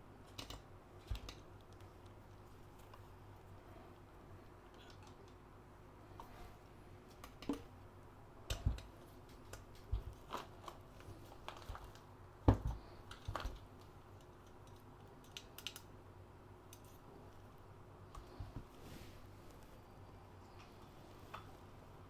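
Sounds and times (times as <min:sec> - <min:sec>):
computer hardware clicks and taps: 0:00.3 - 0:03.0, 0:11.4 - 0:15.9.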